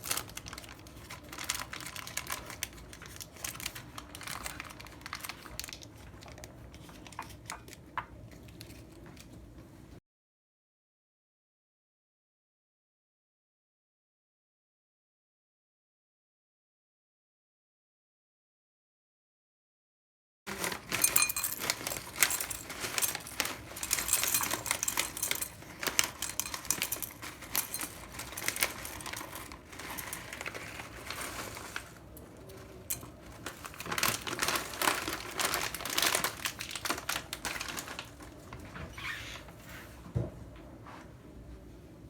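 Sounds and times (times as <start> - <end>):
objects clicking and rustling: 0.0 - 9.3, 20.5 - 38.9.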